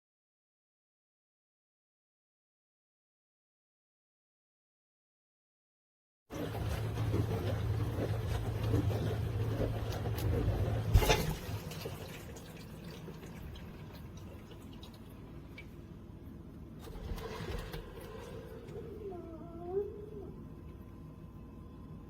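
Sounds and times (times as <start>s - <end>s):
water splashing: 6.3s - 15.8s
dishwasher motor hum: 6.3s - 22.0s
water trickling and dripping: 6.4s - 16.0s.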